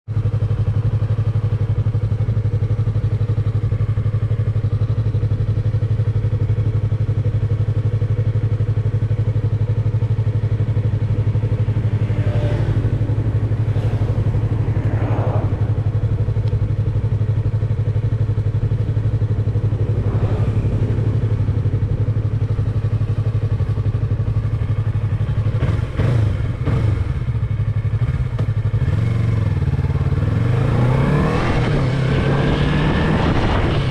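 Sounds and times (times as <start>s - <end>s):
motorcycle engine running: 0.1s - 33.9s
wind noise on microphone: 31.4s - 33.9s.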